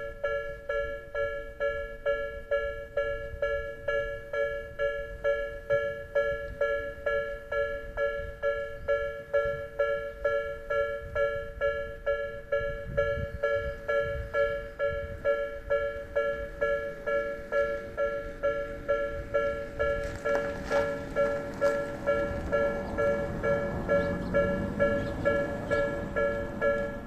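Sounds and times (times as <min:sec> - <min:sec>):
railroad crossing bell ringing: 0:00.0 - 0:27.0.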